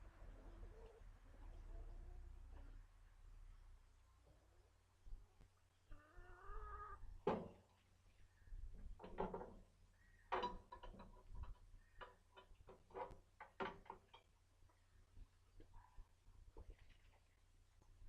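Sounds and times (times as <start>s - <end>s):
wavering animal call: 5.9s - 7.0s
sharp knocks and clicks: 10.3s - 14.3s.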